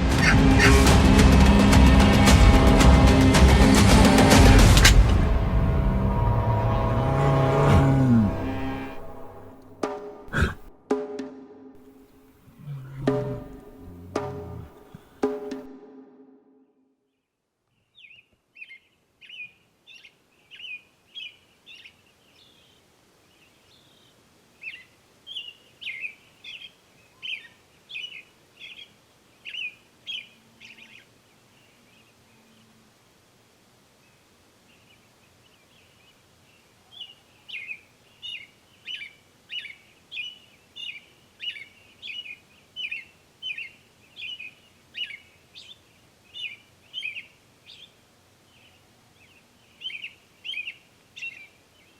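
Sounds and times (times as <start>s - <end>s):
songbird chirping: 11.8s - 15.7s.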